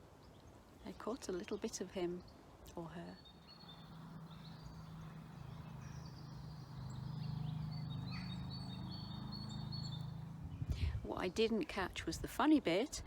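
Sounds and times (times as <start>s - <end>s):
small birds chirping: 0.2s - 10.8s
low steady hum: 2.7s - 11.7s.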